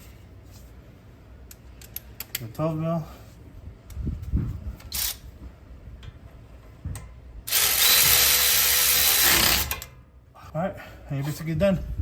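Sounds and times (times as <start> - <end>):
power ratchet running: 7.5 - 9.9.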